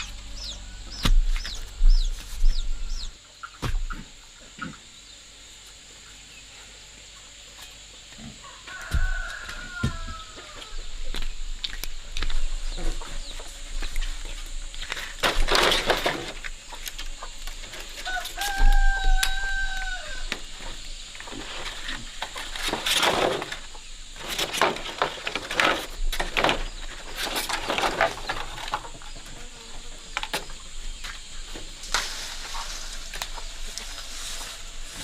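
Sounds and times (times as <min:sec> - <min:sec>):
rooster crowing: 0:00.0 - 0:01.0, 0:08.4 - 0:10.8, 0:18.0 - 0:20.4
chickens clucking and squawking: 0:00.0 - 0:35.0.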